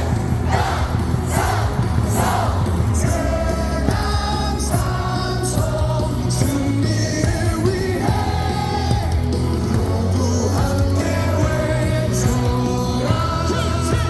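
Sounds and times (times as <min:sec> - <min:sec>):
crowd shouts: 0:00.0 - 0:05.0
loud amplified music: 0:00.0 - 0:14.0
stadium crowd singing: 0:00.0 - 0:14.0.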